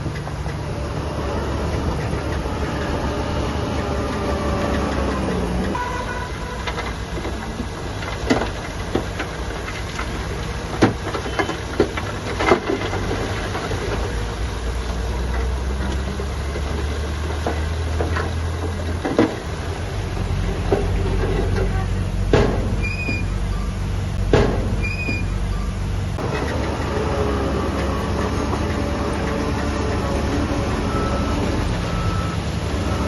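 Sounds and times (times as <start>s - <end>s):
diesel construction machinery running: 0.0s - 33.0s
metallic clanks and knocks: 15.3s - 23.4s, 24.2s - 25.5s.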